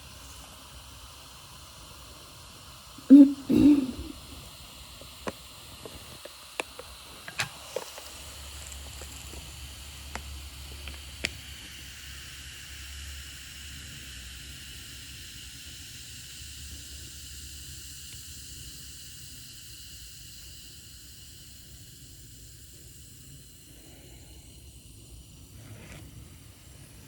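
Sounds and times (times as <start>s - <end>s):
effervescent tablets fizzing in water: 0.0s - 27.0s.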